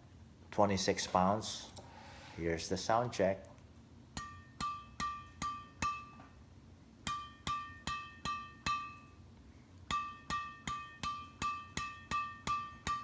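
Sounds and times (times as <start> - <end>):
racket strings tapped with ringing ping: 4.1 - 6.4, 7.0 - 9.2, 9.9 - 13.0.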